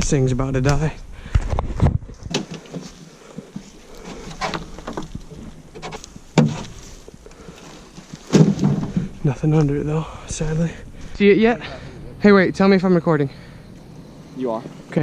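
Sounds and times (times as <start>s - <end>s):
sharp wooden knocks: 5.8s - 6.8s, 8.1s - 9.3s.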